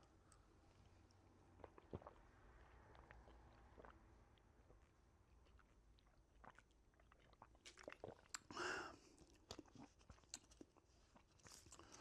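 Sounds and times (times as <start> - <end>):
person sipping and swallowing: 1.6 - 4.0, 5.5 - 10.2.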